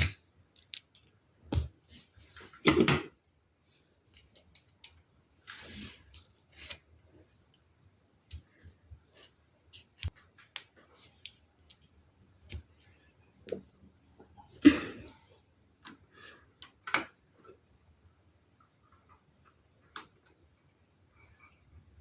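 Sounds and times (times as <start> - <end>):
plastic pieces clicking: 0.0 - 1.7.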